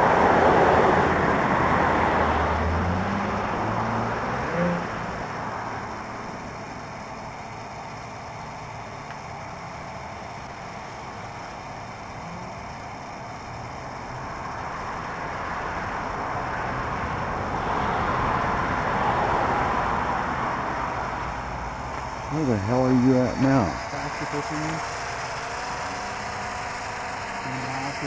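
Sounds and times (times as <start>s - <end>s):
steady outdoor rushing noise: 0.0s - 28.0s.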